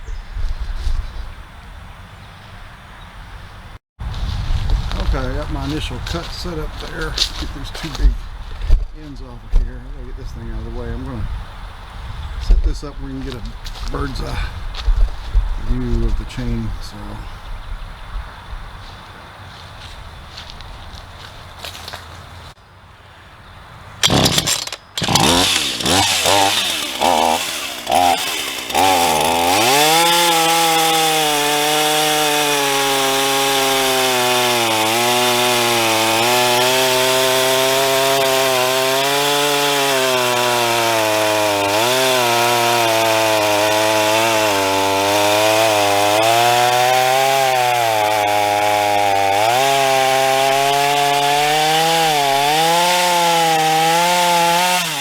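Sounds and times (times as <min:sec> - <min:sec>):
chainsaw revving and cutting wood: 0:04.9 - 0:08.2, 0:24.0 - 0:55.0.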